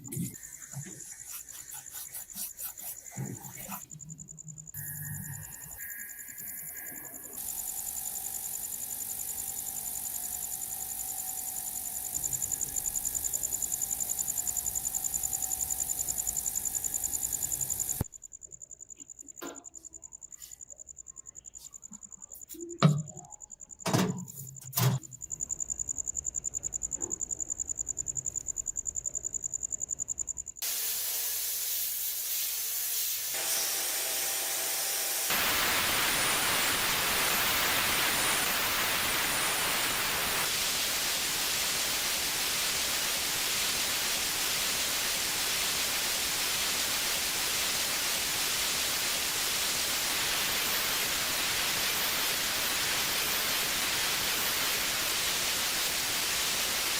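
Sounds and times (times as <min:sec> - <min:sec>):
pulsing high-pitched whine: 0:02.9 - 0:18.1, 0:33.4 - 0:56.9
loud steady hiss: 0:04.8 - 0:18.1, 0:30.6 - 0:56.9.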